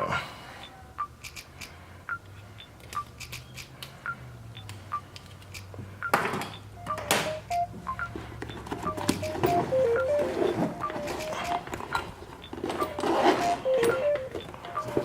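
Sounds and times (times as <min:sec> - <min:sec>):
hand tools clicking and clinking: 0:10.8 - 0:15.0.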